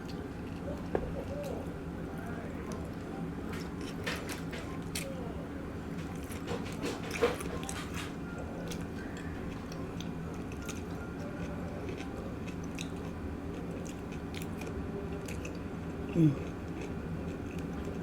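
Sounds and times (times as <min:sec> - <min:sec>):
steady low hum: 0:00.0 - 0:18.0
wet chewing and biting: 0:06.0 - 0:18.0
low throat sound: 0:16.1 - 0:16.5.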